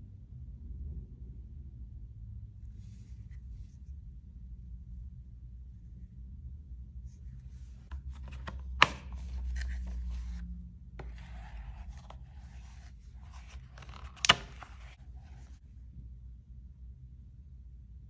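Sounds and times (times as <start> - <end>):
paper packaging rustling: 7.9 - 10.4, 11.0 - 15.5.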